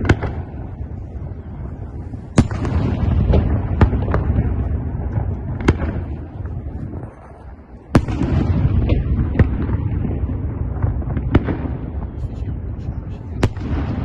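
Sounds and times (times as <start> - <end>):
low rumble of echoing explosions: 0.0 - 14.0.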